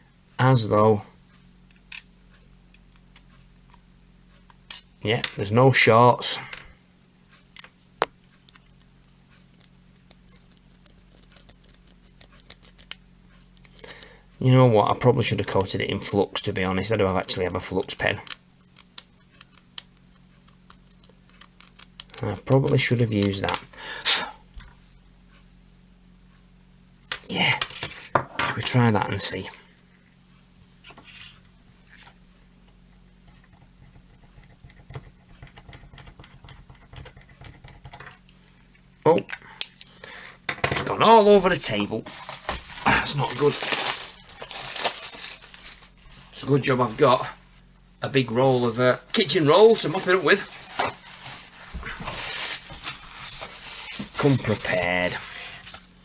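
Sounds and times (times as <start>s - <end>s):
faint electrical hum: 0.0s - 56.0s
pen tapping on circuit board: 33.3s - 38.1s.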